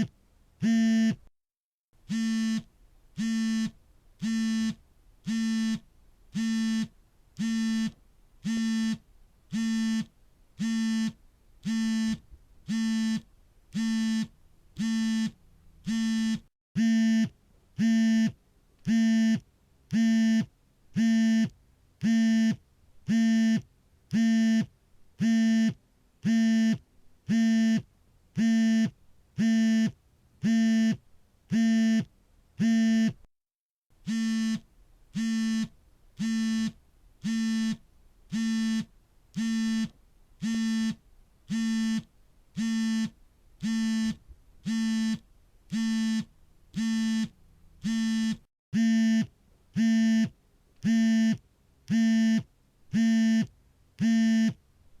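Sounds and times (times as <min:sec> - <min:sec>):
smartphone vibrating: 0:00.0 - 0:01.2, 0:02.1 - 0:33.2, 0:34.0 - 0:54.6.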